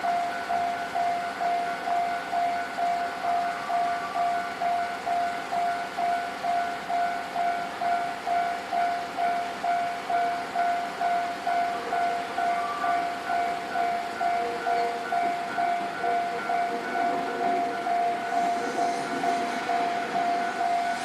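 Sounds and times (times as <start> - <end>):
higher ringing tones: 0.0 - 21.0
level-crossing warning bell: 0.0 - 21.0.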